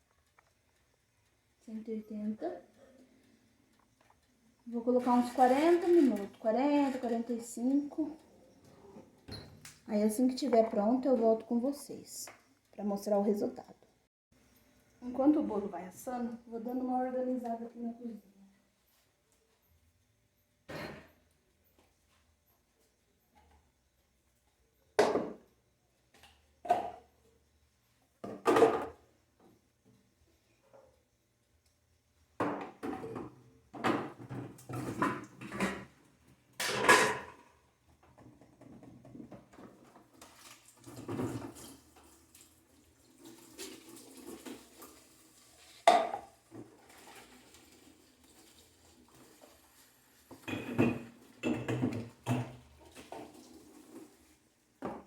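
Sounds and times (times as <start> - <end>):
dishes and utensils clattering: 20.7 - 21.2, 32.5 - 36.0, 36.6 - 37.6, 45.8 - 48.5, 50.3 - 54.1
tap water running: 38.1 - 55.0.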